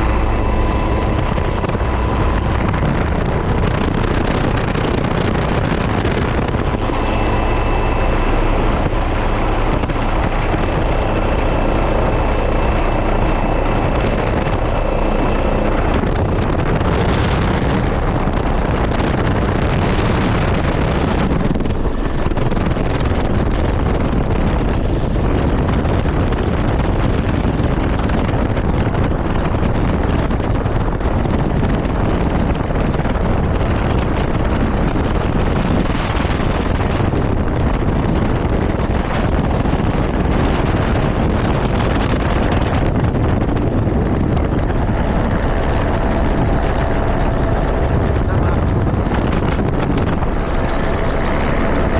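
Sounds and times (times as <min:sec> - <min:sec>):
thin high whine: 0:00.0 - 0:22.9, 0:38.3 - 0:51.9
helicopter rotor noise: 0:00.0 - 0:51.9.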